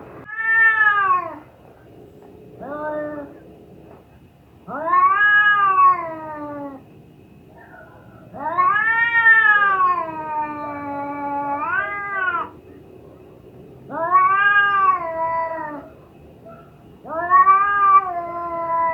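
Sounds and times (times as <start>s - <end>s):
cat yowling: 0.2s - 1.5s, 2.6s - 3.4s, 4.7s - 6.8s, 7.6s - 12.6s, 13.8s - 18.9s.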